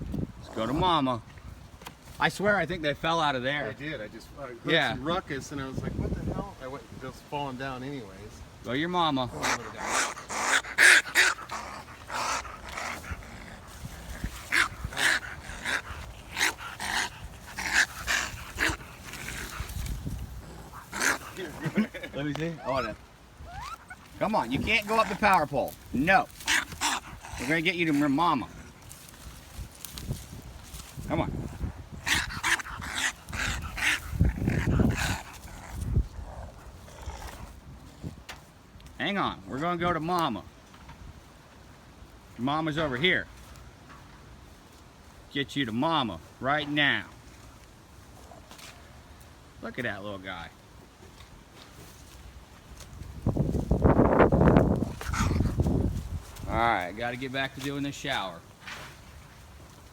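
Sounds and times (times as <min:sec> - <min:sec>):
baby raccoon hissing growls: 0:09.3 - 0:28.8, 0:31.4 - 0:37.6, 0:54.7 - 0:56.0.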